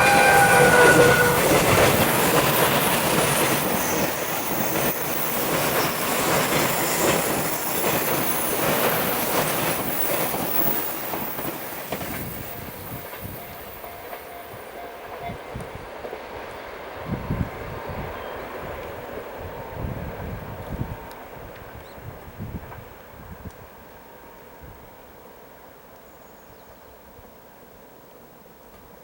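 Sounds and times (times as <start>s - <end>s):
wheels clacking over rail joints: 0.0s - 16.6s
electric train passing: 0.0s - 26.0s.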